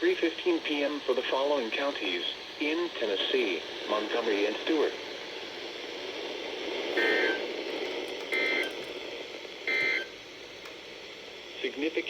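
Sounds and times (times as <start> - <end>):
steady radio hiss: 0.0 - 12.0
short data bursts: 7.0 - 7.5.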